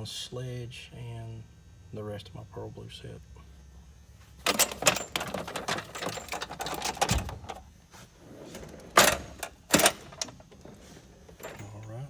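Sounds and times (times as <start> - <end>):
metal tools clattering: 4.4 - 7.6, 8.6 - 12.0
toolbox drawer banging: 4.5 - 7.6, 8.4 - 12.0.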